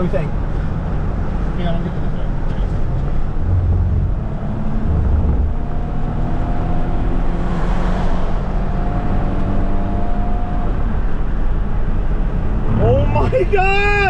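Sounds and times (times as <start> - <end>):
car engine and tyre rumble: 0.0 - 14.0
faint rising whine: 7.3 - 11.0.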